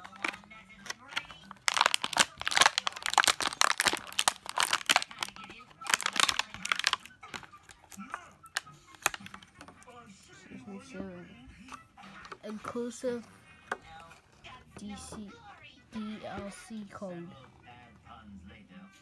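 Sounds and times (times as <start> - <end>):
packaging crinkling and tearing: 0.0 - 9.6.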